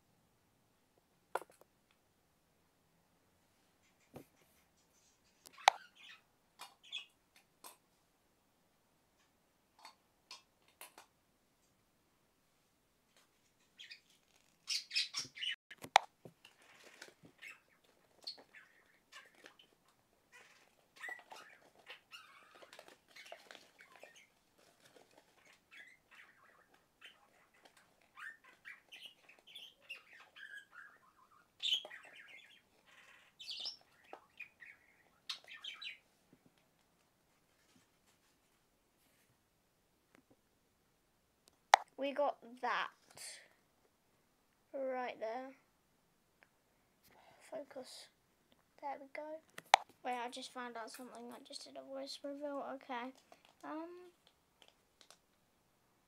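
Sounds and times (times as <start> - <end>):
bird chirps and squawks: 14.7 - 15.6, 17.4 - 24.3, 25.4 - 36.0
rustling: 15.7 - 29.4, 36.1 - 39.4.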